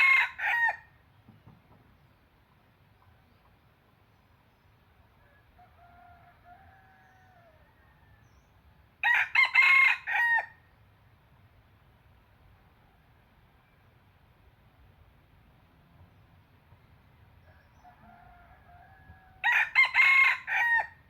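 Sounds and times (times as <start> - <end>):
rooster crowing: 0.0 - 0.9, 5.2 - 8.3, 9.0 - 10.6, 17.4 - 21.0.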